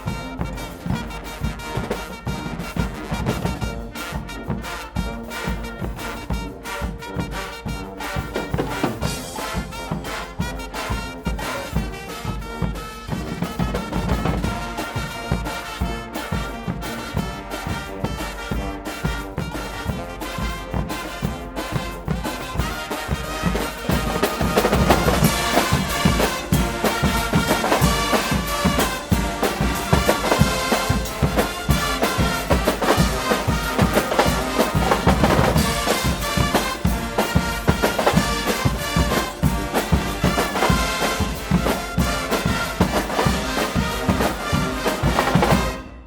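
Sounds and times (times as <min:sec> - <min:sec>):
carnival brass band playing: 0:00.0 - 0:46.0
driving drum beat: 0:00.0 - 0:46.0.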